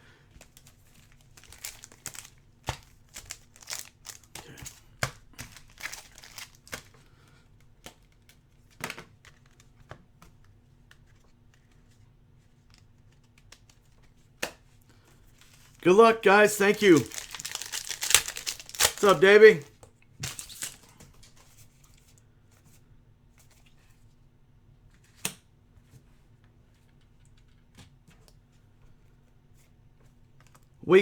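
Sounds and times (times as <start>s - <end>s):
plastic wrapping crinkling and tearing: 1.2s - 4.8s, 5.4s - 6.9s, 16.7s - 19.3s, 20.2s - 20.8s.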